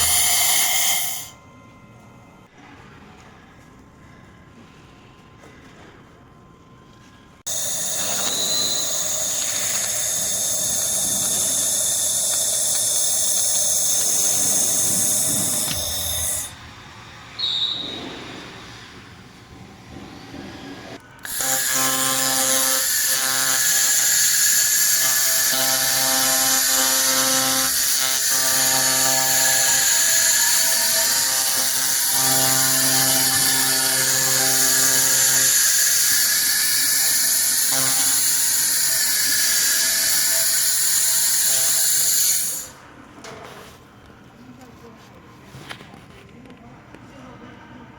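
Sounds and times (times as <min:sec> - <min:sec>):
buzzing hum: 0:00.0 - 0:02.8, 0:06.4 - 0:18.6, 0:19.2 - 0:42.8
laser welder hissing: 0:07.5 - 0:16.5, 0:21.2 - 0:42.8.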